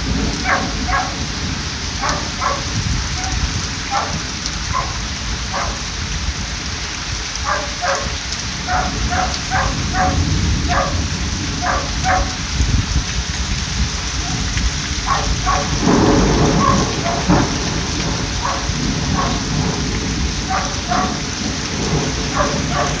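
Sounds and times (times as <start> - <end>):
heavy rain: 0.0 - 23.0
thunder rumble: 0.0 - 23.0
dog barking: 0.4 - 1.3, 1.9 - 5.9, 7.4 - 11.0, 11.6 - 12.4, 14.2 - 14.4, 15.0 - 15.9, 16.5 - 19.6, 20.4 - 21.3, 22.1 - 23.0.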